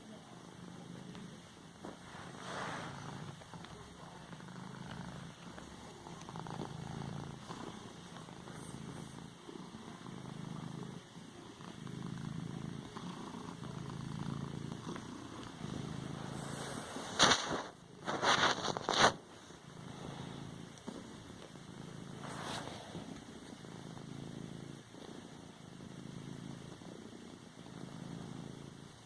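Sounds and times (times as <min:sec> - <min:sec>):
cat purring: 0:00.0 - 0:29.0
loud scratchy rustle: 0:16.3 - 0:19.2, 0:22.2 - 0:23.1.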